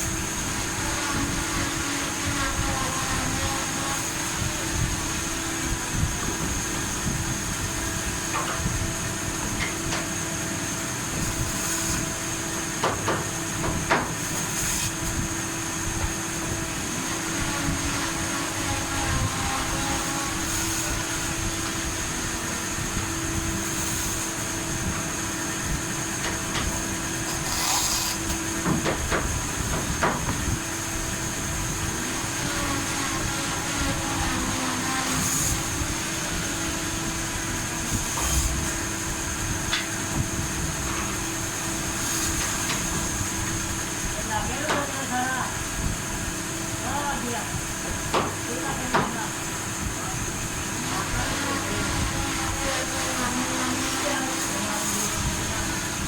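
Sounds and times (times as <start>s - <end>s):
machine hum with high whine: 0.0s - 56.0s.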